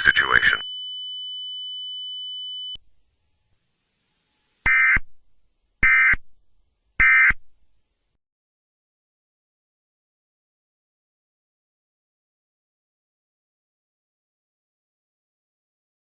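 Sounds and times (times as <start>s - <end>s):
short buzzing data bursts: 4.6s - 5.1s, 5.8s - 6.2s, 7.0s - 7.4s.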